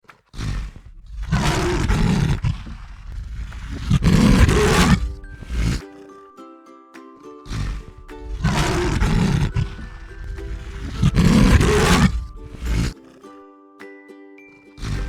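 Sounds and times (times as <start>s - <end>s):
tiger roaring: 0.3s - 5.8s, 7.5s - 13.1s, 14.8s - 15.0s
music notes: 4.9s - 15.0s.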